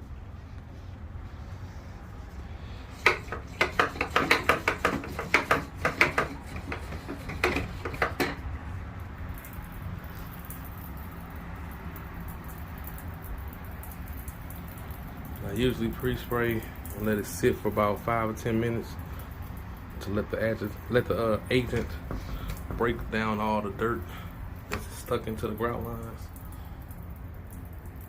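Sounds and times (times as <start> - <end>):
plastic sprayer clacking: 2.9 - 8.4, 24.7 - 25.0.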